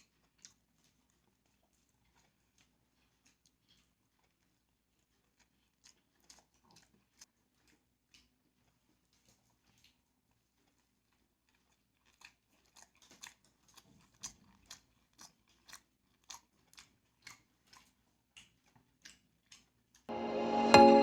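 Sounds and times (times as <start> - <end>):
person chewing: 0.0 - 20.1.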